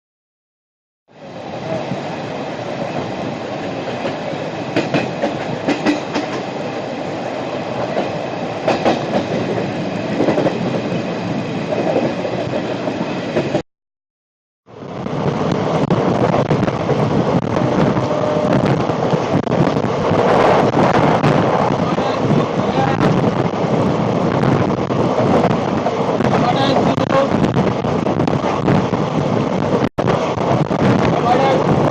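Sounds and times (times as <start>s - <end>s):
train rumbling: 1.1s - 13.6s, 14.7s - 31.9s
wheels clattering over rail joints: 3.6s - 6.6s.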